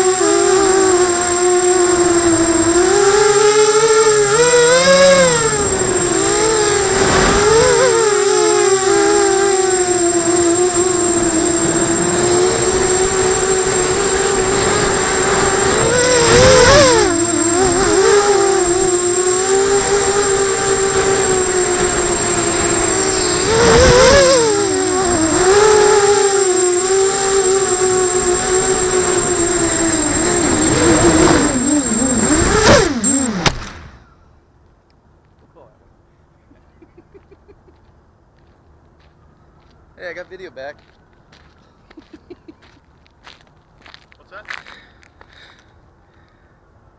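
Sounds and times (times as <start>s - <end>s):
quadcopter motors buzzing: 0.0s - 34.2s.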